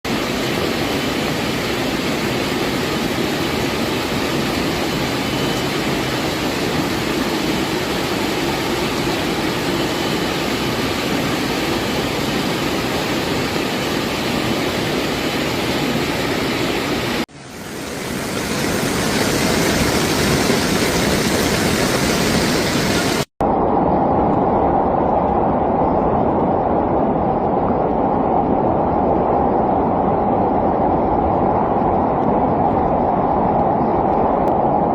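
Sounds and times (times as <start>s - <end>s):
floodwater rushing: 0.1s - 23.3s
heavy rain: 0.1s - 23.3s.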